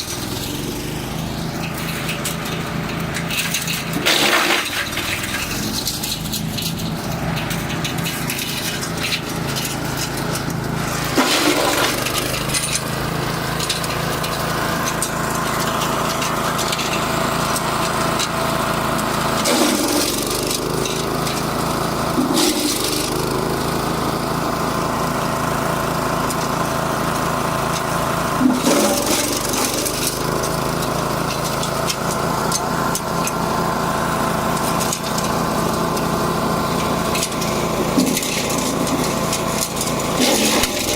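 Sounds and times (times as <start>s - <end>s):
wood cracking and splintering: 0.0s - 18.3s, 19.4s - 23.9s, 36.7s - 40.9s
wood chipper engine running: 0.0s - 40.9s.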